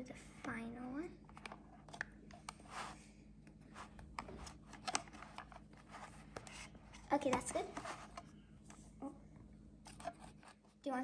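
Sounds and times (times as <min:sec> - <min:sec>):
hands rubbing and rustling plastic: 0:01.6 - 0:09.0.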